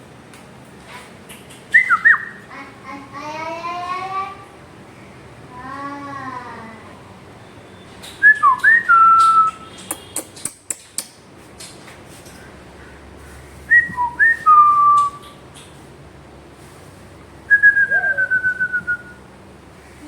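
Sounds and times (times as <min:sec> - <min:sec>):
parrot whistling: 0:01.7 - 0:02.4, 0:17.5 - 0:19.2.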